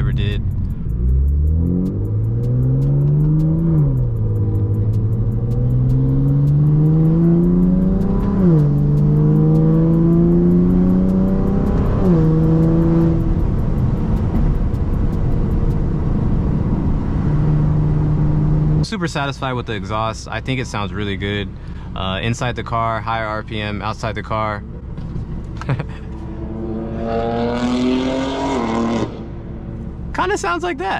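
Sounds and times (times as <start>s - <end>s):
car engine accelerating through gears: 0.0s - 18.8s, 25.1s - 30.1s.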